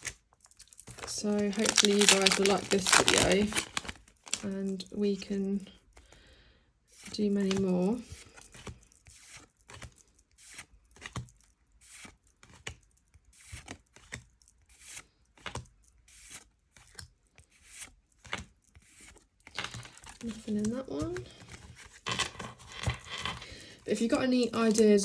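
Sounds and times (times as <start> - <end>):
foil wrapper crinkling: 0.0 - 4.9, 7.3 - 8.7, 19.4 - 25.0
cards sliding and flicking: 7.0 - 11.2, 11.8 - 23.6.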